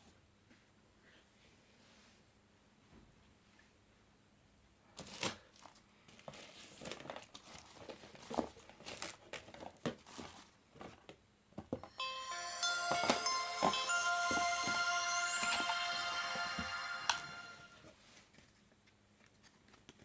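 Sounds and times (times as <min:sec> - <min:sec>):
short bright tune: 0:11.9 - 0:17.9.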